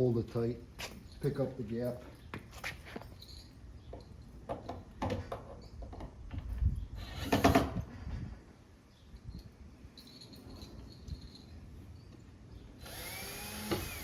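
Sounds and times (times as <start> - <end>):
wood and tools clattering: 2.0 - 7.9.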